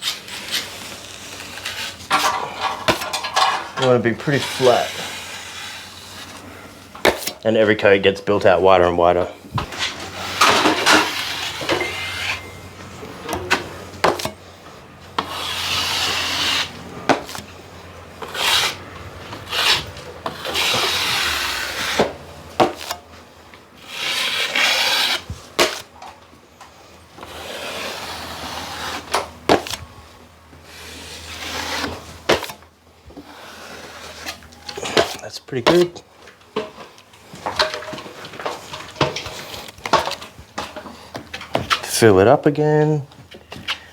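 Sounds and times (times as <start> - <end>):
drywall blade scraping compound: 0.0 - 7.6, 9.6 - 14.5, 15.2 - 23.0, 23.8 - 26.1, 26.8 - 29.9, 30.6 - 36.0.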